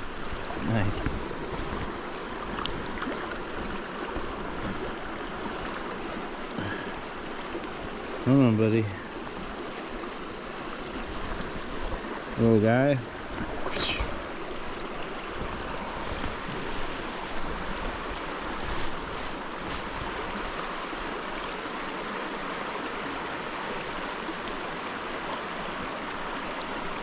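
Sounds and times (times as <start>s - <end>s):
creek water rushing over rocks: 0.0s - 27.0s
short high squeak: 13.7s - 14.1s.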